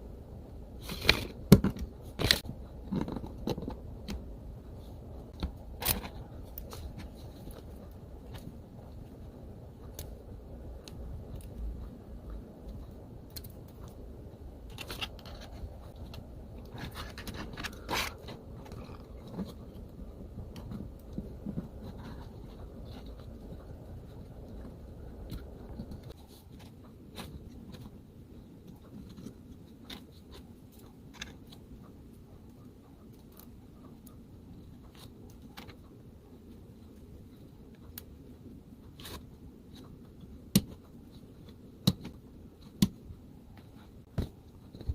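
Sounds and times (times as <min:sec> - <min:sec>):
plastic parts clicking and scraping: 0:00.8 - 0:04.2, 0:04.8 - 0:08.6, 0:14.6 - 0:28.0, 0:28.6 - 0:32.0.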